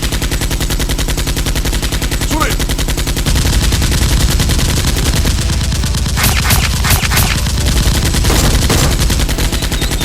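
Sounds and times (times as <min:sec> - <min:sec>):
rapid automatic gunfire: 0:00.0 - 0:10.0
sharp gunshot cracks: 0:06.2 - 0:07.5.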